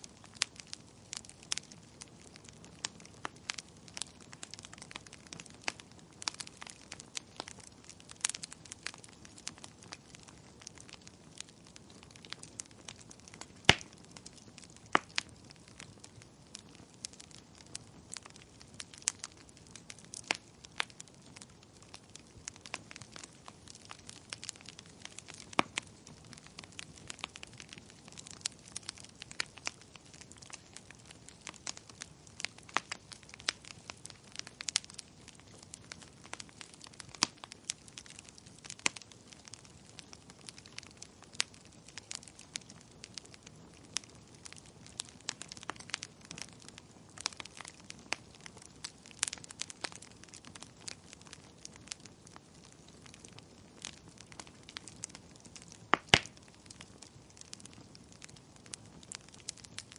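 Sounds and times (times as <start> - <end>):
wood fire crackling and popping: 0.0 - 59.9.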